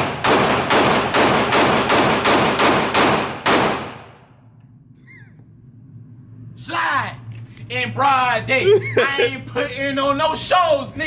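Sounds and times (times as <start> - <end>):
gunshot echo: 0.0 - 4.3
rifle shots: 0.0 - 4.3.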